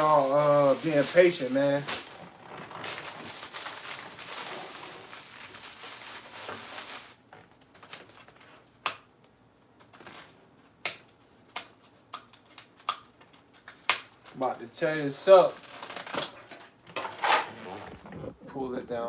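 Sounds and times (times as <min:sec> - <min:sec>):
food packaging rustling: 0:00.0 - 0:08.6.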